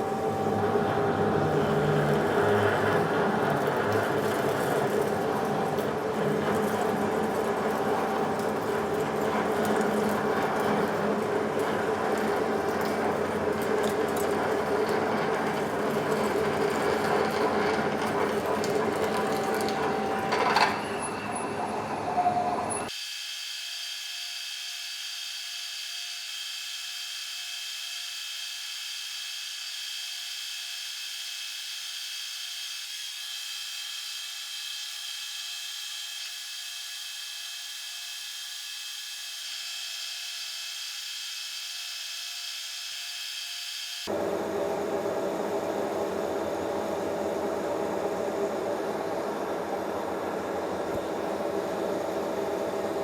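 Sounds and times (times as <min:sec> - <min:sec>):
metal lathe running: 0:00.0 - 0:22.9, 0:44.1 - 0:53.0.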